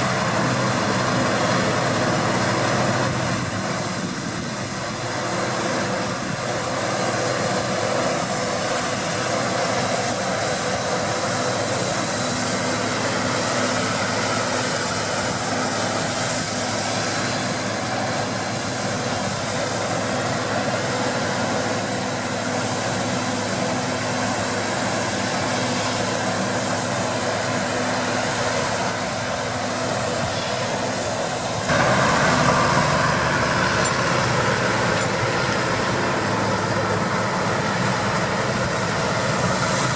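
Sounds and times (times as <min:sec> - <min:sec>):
combine harvester engine drone: 0:00.0 - 0:39.9.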